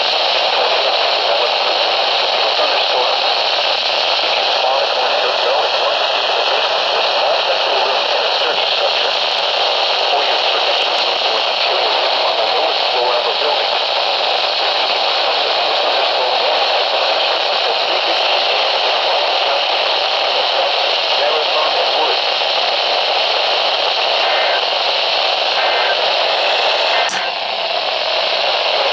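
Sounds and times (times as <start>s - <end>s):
radio static hiss: 0.0s - 28.9s
sharp click: 26.8s - 27.5s.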